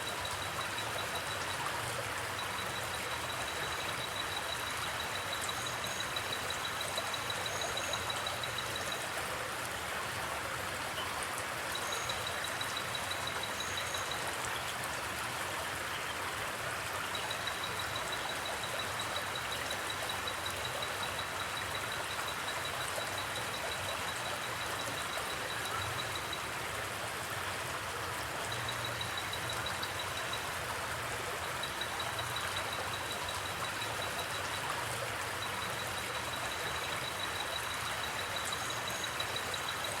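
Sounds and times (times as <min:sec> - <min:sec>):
river water flowing: 0:00.0 - 0:40.0
cricket trilling: 0:02.3 - 0:09.1, 0:31.4 - 0:40.0.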